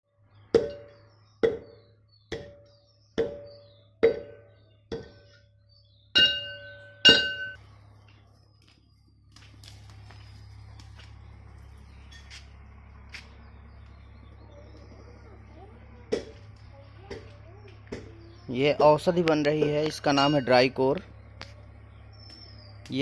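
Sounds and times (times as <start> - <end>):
pestle pounding in metal mortar: 0.6 - 5.2.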